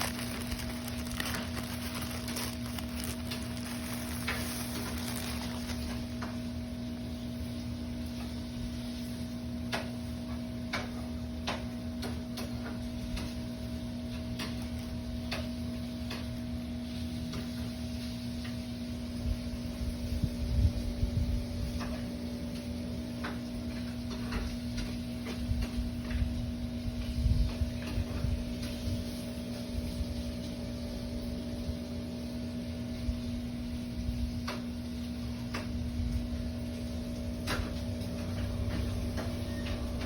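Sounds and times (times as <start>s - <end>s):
parcel being handled: 0.0s - 6.4s
steady electrical hum: 0.0s - 9.6s.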